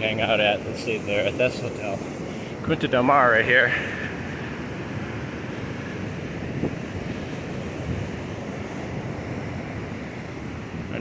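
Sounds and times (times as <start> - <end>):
surf washing onto beach: 0.0 - 11.0
wind buffeting microphone: 0.0 - 11.0.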